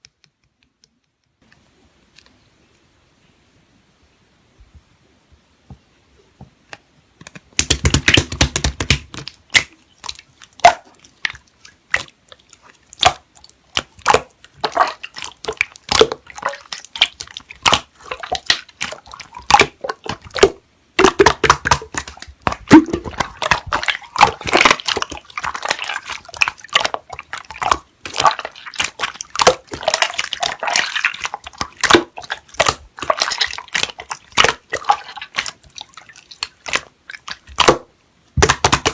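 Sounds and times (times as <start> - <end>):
slime squelching by hand: 7.6 - 38.9.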